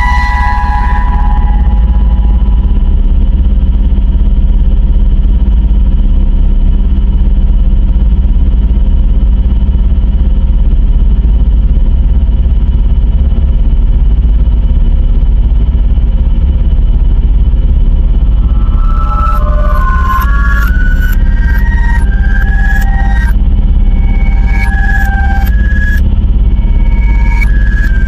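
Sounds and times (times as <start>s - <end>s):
electronic alarm drone: 0.0s - 4.8s, 16.4s - 28.0s.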